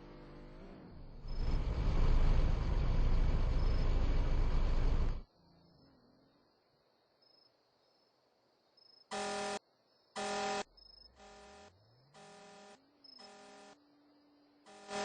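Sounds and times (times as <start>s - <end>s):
car horn honking: 9.1s - 9.6s, 10.2s - 13.8s, 14.7s - 15.0s.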